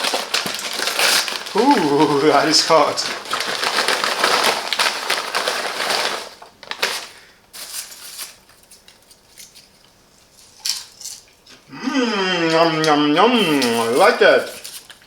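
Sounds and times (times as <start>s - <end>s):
paper popcorn bag crackling: 0.0s - 8.8s, 12.6s - 15.0s.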